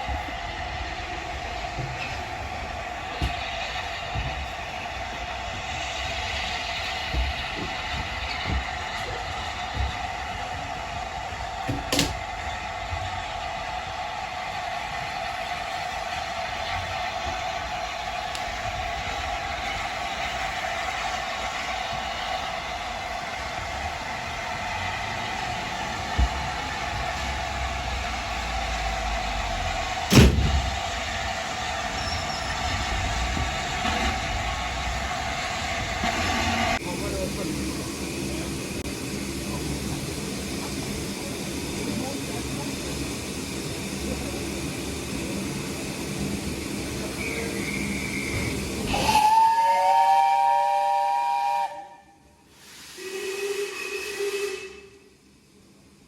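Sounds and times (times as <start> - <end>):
steam hissing: 0.0 - 56.0
steam locomotive whistle: 24.6 - 36.8, 47.0 - 55.2
loud bang: 30.0 - 30.9.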